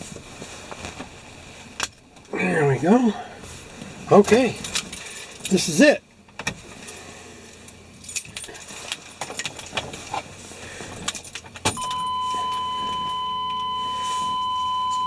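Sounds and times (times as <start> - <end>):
keys jangling: 8.0 - 9.7
high electronic warning tone: 11.8 - 15.0.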